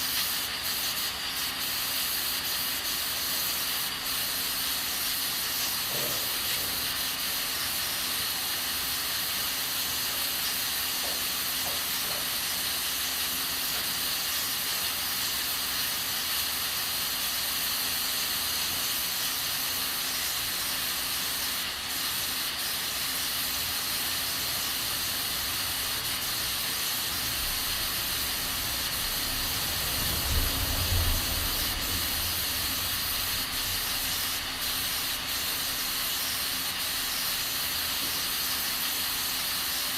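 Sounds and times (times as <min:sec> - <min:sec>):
pressure cooker hissing: 0:00.0 - 0:39.9
low rumble: 0:28.6 - 0:33.5.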